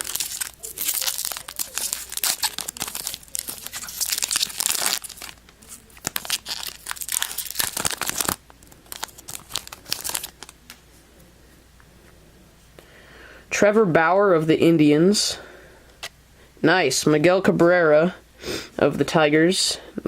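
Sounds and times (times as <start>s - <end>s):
foil wrapper tearing and crinkling: 0.0s - 10.6s
cards rustling: 0.0s - 11.3s.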